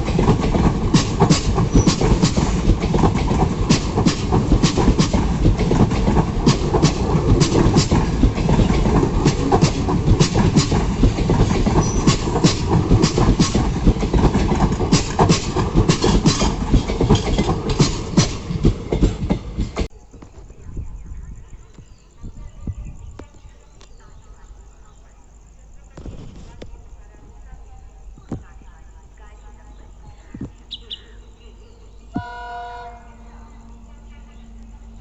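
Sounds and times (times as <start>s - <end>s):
train rumbling past: 0.0s - 19.9s, 28.9s - 35.0s
wheels clacking over rail joints: 0.0s - 19.9s.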